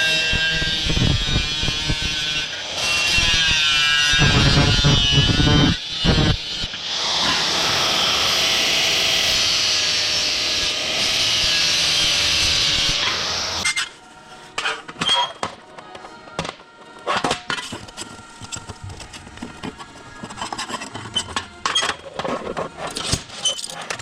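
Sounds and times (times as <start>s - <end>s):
power tool rasping on metal: 0.4s - 7.4s.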